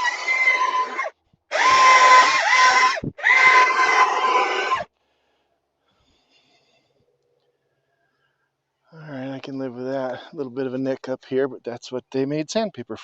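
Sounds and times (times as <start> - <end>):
power tool whining cutting wood: 0.0 - 4.9.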